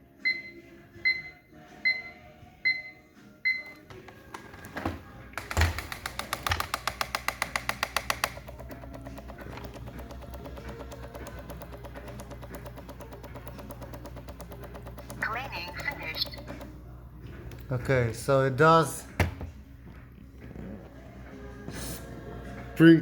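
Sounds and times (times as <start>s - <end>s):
robot floor cleaner beeping: 0.2s - 3.8s, 7.8s - 16.7s
fast even ticking: 5.8s - 16.8s
robot cleaner motors running: 7.8s - 16.7s.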